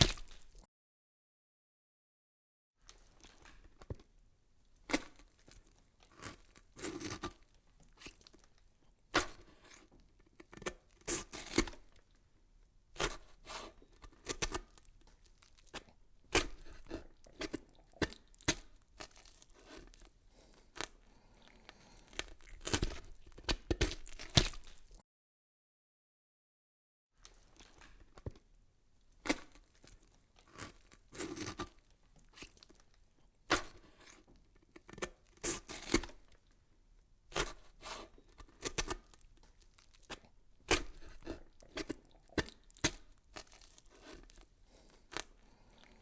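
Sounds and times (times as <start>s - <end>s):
rustling or tearing: 0.0s - 0.6s, 21.9s - 25.0s, 37.4s - 46.0s.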